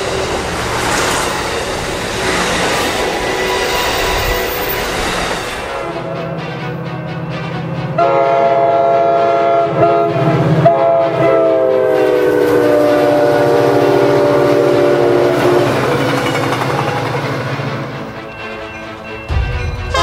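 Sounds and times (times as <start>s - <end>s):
train rumbling: 0.0s - 20.0s
train air horn: 7.9s - 16.2s.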